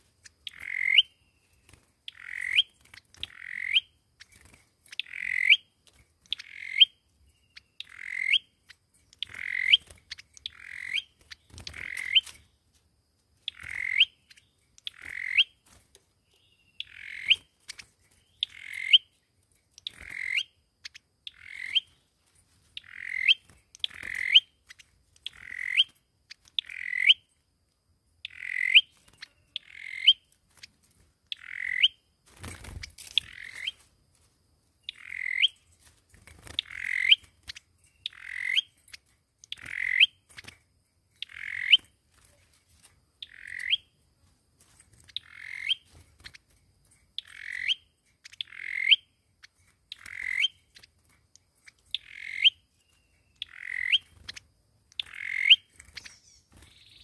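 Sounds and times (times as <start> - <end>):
songbird calls with upward flick: 0.4 - 3.9, 55.0 - 57.0.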